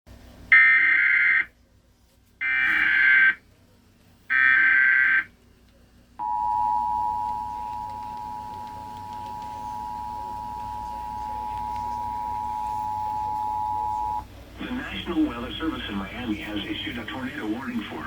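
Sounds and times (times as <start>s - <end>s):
two-tone attention signal: 6.2s - 14.3s.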